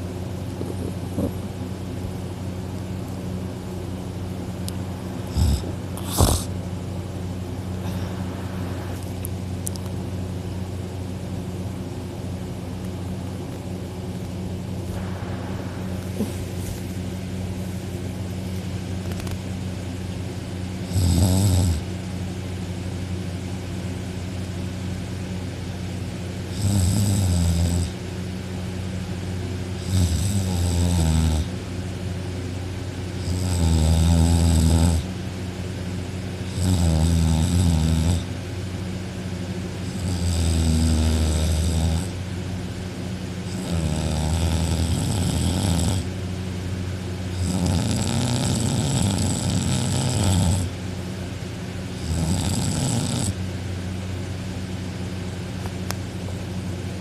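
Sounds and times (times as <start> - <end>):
steady low hum: 0.0 - 57.0
man snoring loudly: 5.2 - 6.5, 20.8 - 21.9, 26.5 - 28.0, 29.8 - 31.5, 33.2 - 35.1, 36.4 - 38.3, 39.8 - 42.2, 43.5 - 46.1, 47.3 - 50.7, 52.0 - 53.4.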